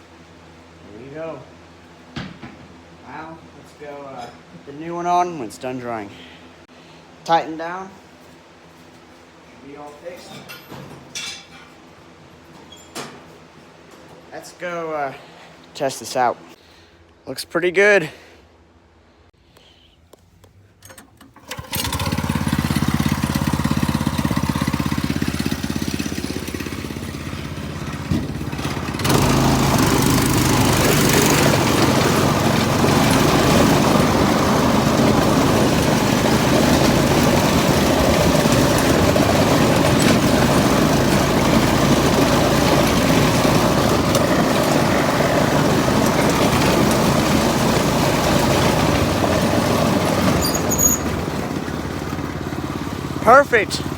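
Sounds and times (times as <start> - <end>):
go-kart engine running: 21.4 - 53.9.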